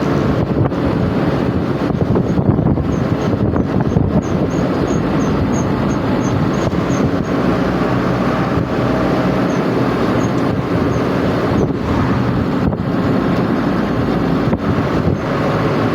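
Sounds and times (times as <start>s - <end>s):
road noise: 0.0s - 15.9s
vehicle engine: 0.0s - 15.9s
faint high ticking: 2.3s - 7.5s, 9.3s - 11.8s.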